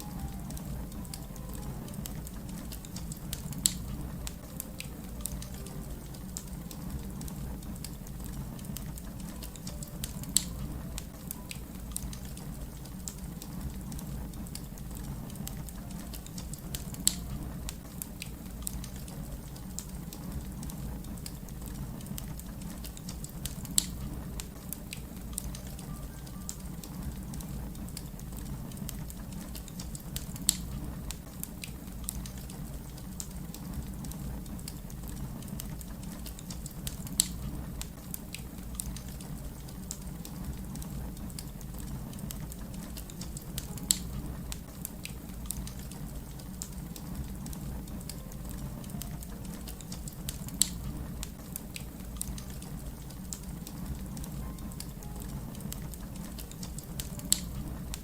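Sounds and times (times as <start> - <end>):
wood fire crackling: 0.0 - 58.0
fire pops: 0.1 - 58.0
low rumble: 36.7 - 38.0, 38.6 - 44.7.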